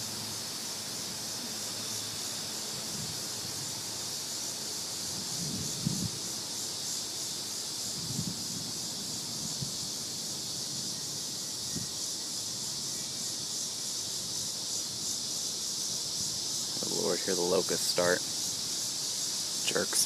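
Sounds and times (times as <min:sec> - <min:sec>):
cicadas droning: 0:00.0 - 0:20.0
wind bumps on microphone: 0:05.1 - 0:06.2, 0:08.0 - 0:09.9.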